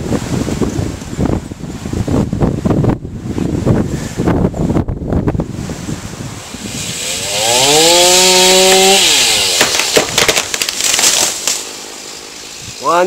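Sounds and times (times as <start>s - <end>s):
chainsaw revving and cutting wood: 6.4s - 12.6s.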